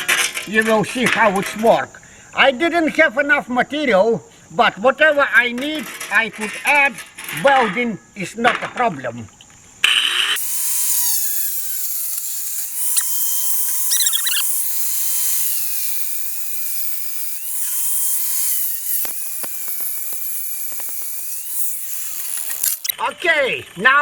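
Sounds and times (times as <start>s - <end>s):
grinder motor whine: 10.0s - 22.9s
blade cutting aluminum hiss: 10.3s - 22.9s
sharp clicks: 18.4s - 22.9s.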